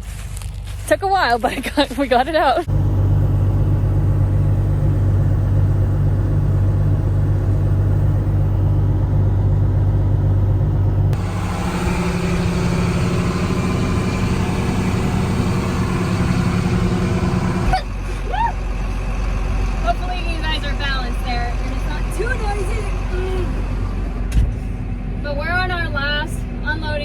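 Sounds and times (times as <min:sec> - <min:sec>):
heavy diesel engine running: 0:02.5 - 0:27.0.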